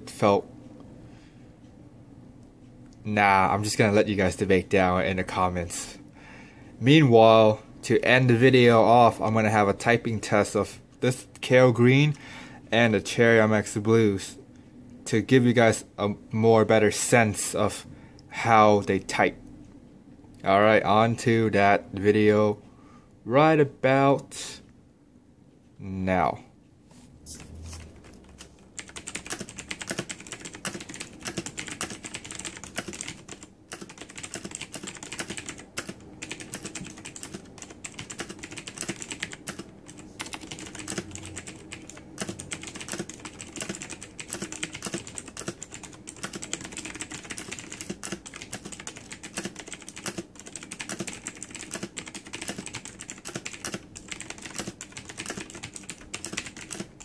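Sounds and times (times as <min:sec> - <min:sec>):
mechanical keyboard typing: 0:27.8 - 0:57.0.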